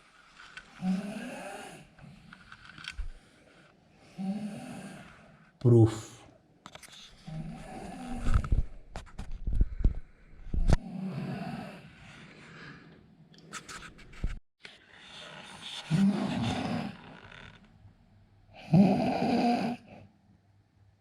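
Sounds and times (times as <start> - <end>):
quiet breathing: 0.0 - 5.6, 6.9 - 8.8, 9.5 - 13.3, 14.6 - 17.5
man snoring: 0.8 - 1.9, 4.2 - 5.2, 7.3 - 8.5, 10.8 - 12.0, 15.2 - 17.5, 18.6 - 20.0.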